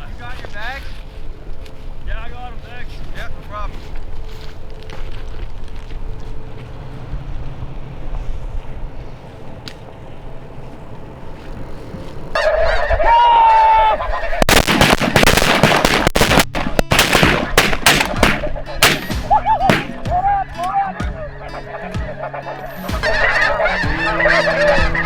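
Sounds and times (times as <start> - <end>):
flock of geese calling: 0.0 - 6.7, 9.0 - 14.4, 19.4 - 25.0
low wind-like noise: 0.0 - 15.2.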